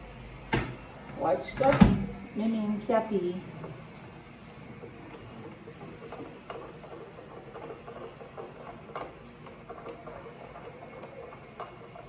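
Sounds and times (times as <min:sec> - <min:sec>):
faint steady hum: 0:00.0 - 0:12.0
kitchen items clicking: 0:04.9 - 0:12.0.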